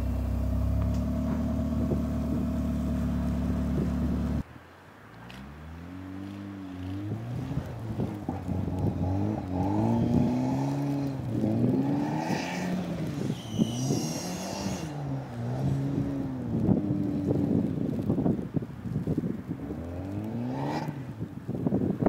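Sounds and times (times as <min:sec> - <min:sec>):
car engine revving: 0:00.0 - 0:04.4, 0:05.2 - 0:18.1.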